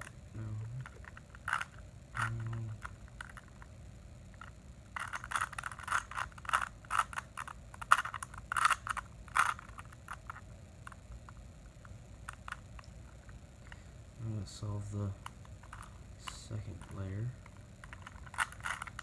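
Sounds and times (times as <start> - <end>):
plastic puzzle cube clicking: 0.8 - 3.6, 4.4 - 11.0, 15.2 - 19.0.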